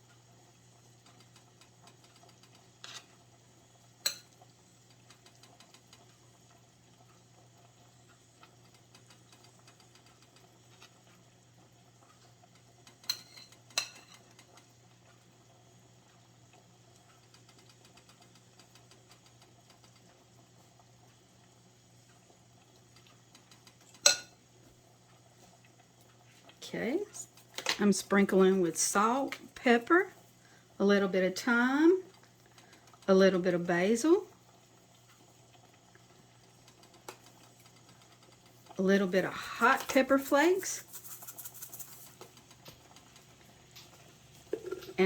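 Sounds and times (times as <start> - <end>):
faint steady hum: 0.0 - 45.0
utensil clinking against dishes: 12.9 - 14.2, 24.0 - 24.4, 43.8 - 45.0.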